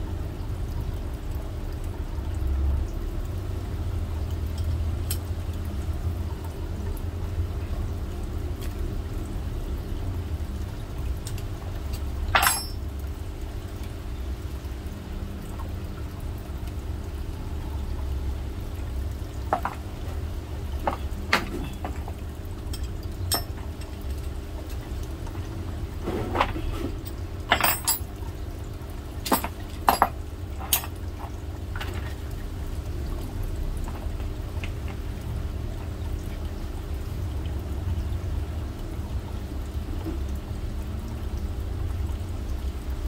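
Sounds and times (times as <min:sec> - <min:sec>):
metal tool parts clinking: 0:11.3 - 0:12.8, 0:22.7 - 0:23.6, 0:26.4 - 0:28.1, 0:29.2 - 0:31.0.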